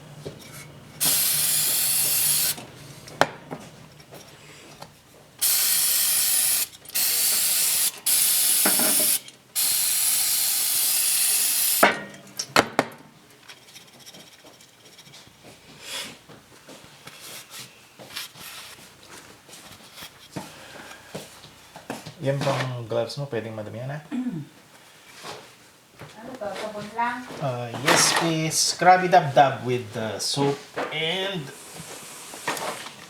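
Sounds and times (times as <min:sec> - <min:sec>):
aerosol spray can hissing: 0:01.0 - 0:02.7, 0:05.4 - 0:11.9.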